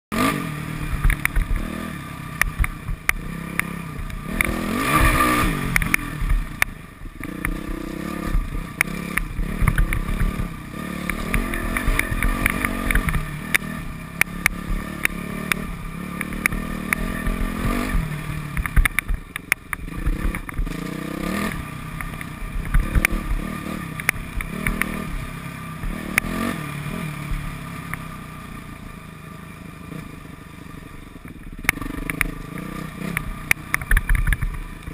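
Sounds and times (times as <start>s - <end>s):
dirt bike engine revving: 0.1s - 34.9s
sharp knocks and rattles: 2.4s - 20.9s.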